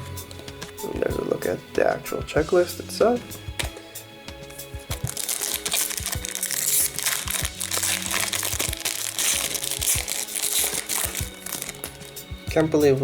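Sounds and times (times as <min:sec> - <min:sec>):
background music with steady beat: 0:00.0 - 0:13.0
foil wrapper crinkling and tearing: 0:04.6 - 0:12.3.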